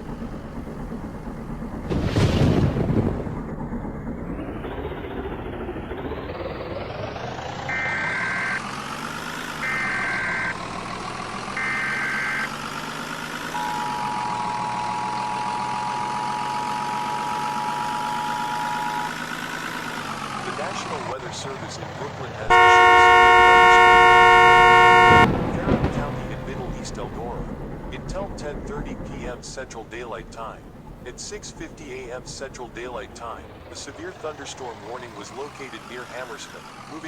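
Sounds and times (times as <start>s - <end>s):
vehicle engine running: 0.0s - 37.0s
steady alarm tone: 7.7s - 20.2s, 22.5s - 25.3s
screeching data bursts: 7.7s - 20.8s.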